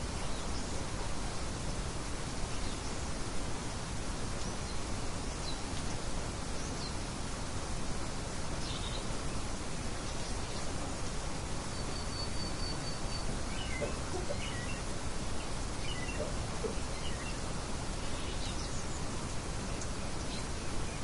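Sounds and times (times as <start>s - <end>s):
small birds chirping: 8.5s - 21.0s.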